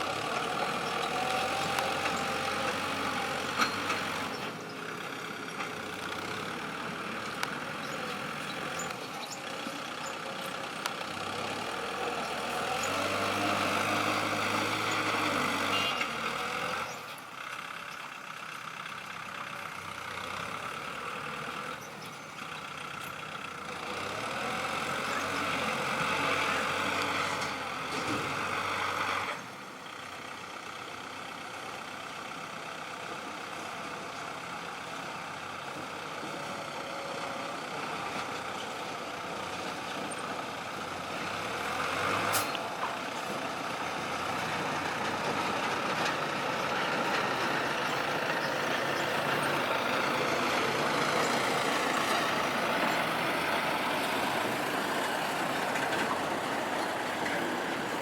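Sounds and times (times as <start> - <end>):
excavator engine and hydraulics: 0.0 - 58.0.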